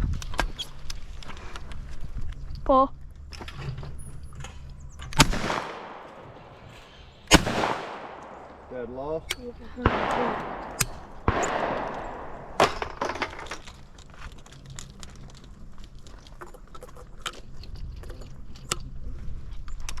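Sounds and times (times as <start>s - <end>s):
shotgun shots with echo: 5.2s - 13.4s
small clicks and knocks: 10.4s - 18.9s, 19.5s - 20.0s.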